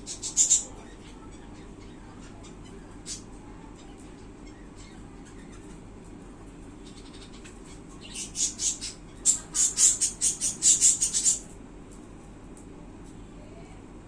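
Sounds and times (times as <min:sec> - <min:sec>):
budgerigar chirping: 0:00.0 - 0:00.8, 0:08.0 - 0:11.5.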